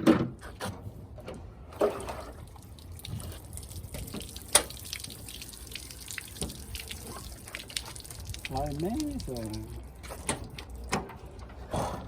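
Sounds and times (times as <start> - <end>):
water splashing and dripping: 1.7 - 11.6.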